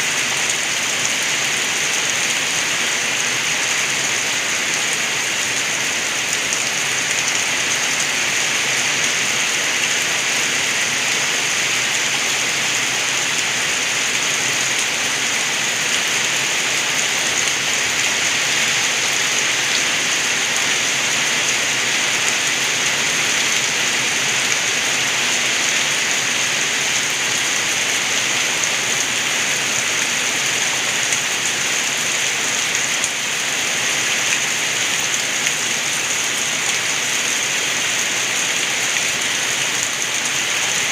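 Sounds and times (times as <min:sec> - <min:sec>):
rainwater gurgling: 0:00.0 - 0:40.9
steady rain falling: 0:00.0 - 0:40.9.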